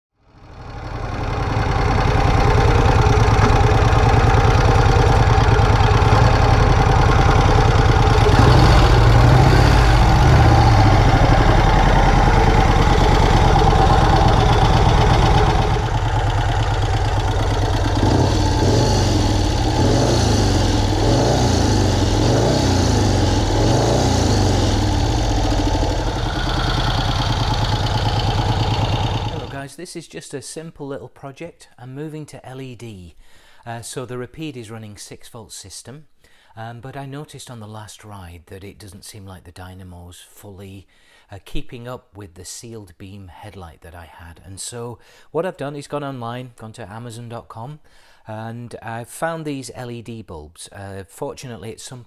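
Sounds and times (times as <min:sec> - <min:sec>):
motorcycle engine idling and revving: 0:00.3 - 0:29.6.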